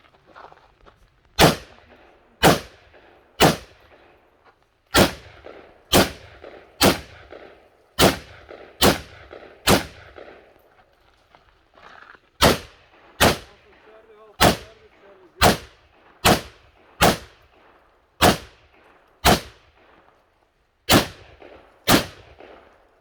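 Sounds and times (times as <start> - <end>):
rifle shots with echo: 1.4 - 10.7, 12.4 - 20.2, 20.8 - 23.0.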